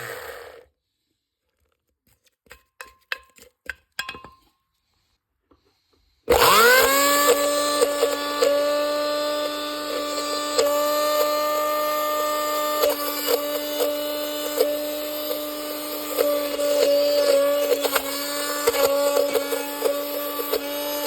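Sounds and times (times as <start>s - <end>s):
blender motor whining: 0.0s - 0.7s, 6.3s - 21.0s.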